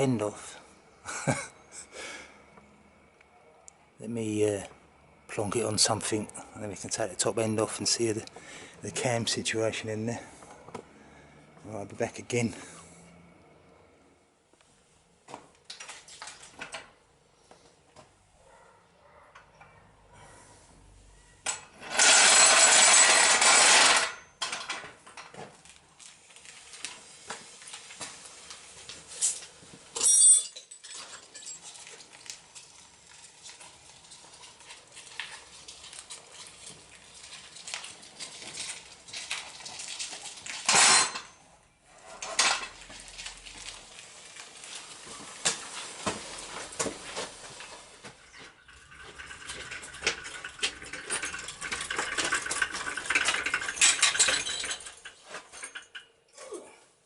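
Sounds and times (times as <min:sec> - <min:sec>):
metal tools clinking: 0:21.4 - 0:25.3, 0:29.2 - 0:41.4, 0:42.0 - 0:43.1, 0:48.3 - 0:56.3.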